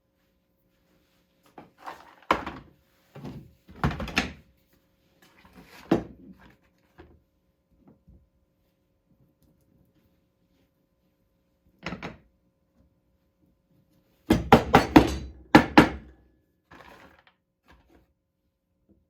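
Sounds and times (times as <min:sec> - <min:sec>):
tools knocking on workbench: 0:14.3 - 0:16.1.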